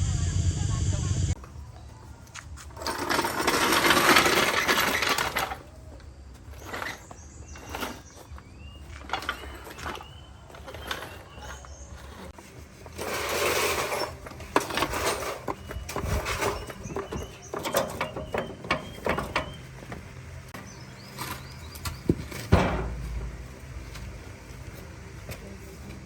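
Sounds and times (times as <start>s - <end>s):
tools clicking and knocking on metal: 14.4s - 19.6s.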